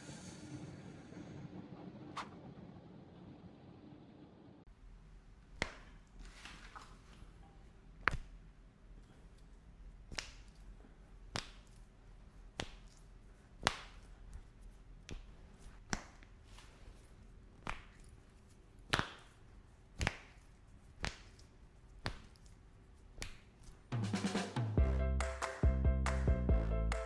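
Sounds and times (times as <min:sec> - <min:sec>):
hand slapping body: 0:05.5 - 0:06.1, 0:08.0 - 0:08.4, 0:10.0 - 0:10.6, 0:11.3 - 0:11.9, 0:12.5 - 0:16.7, 0:17.6 - 0:23.9.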